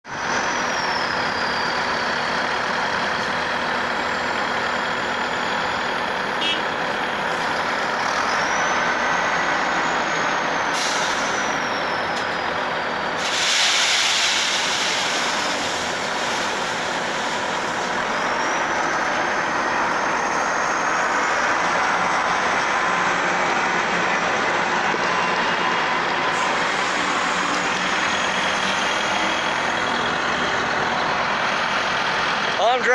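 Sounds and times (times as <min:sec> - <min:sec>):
heavy diesel equipment running: 0:00.0 - 0:32.9
burst of hiss: 0:13.2 - 0:17.9.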